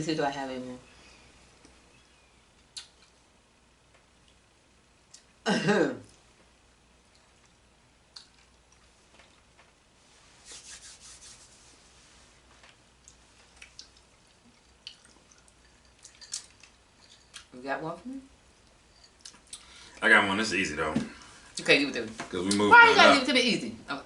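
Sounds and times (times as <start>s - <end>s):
soft rustle: 8.8s - 17.4s.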